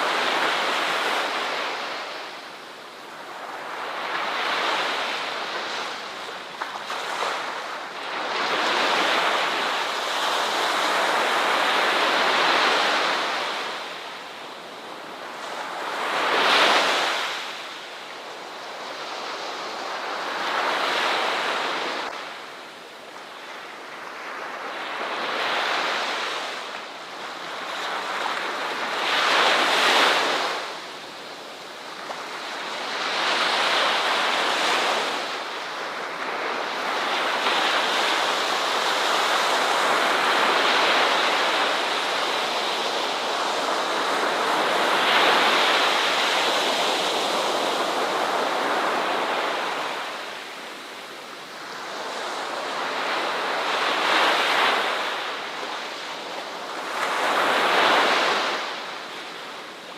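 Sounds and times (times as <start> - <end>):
ocean waves breaking on shore: 0.0 - 59.9.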